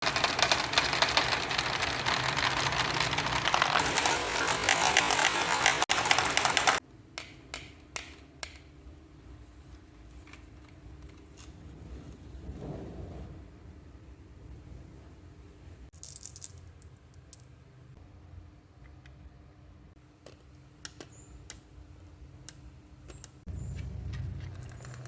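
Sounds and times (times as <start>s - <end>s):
marbles rolling down track: 0.0s - 6.8s, 24.5s - 25.0s.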